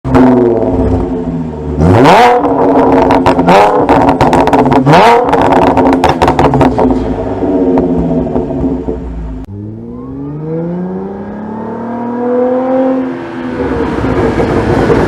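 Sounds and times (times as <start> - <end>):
exhaust popping and crackling: 0.0 - 9.5, 13.6 - 15.0
car engine revving: 0.1 - 15.0.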